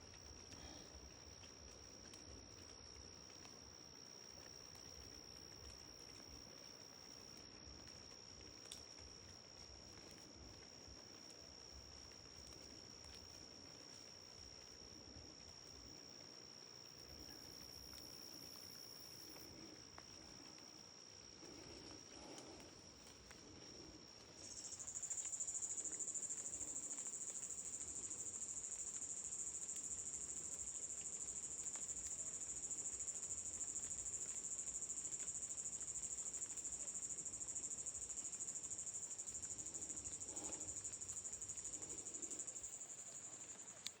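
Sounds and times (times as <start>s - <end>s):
insects trilling: 0.0s - 44.0s
higher-pitched insect trill: 15.4s - 44.0s.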